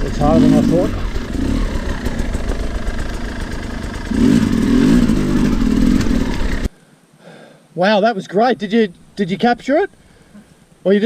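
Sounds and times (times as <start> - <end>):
dirt bike engine revving: 0.0 - 6.7.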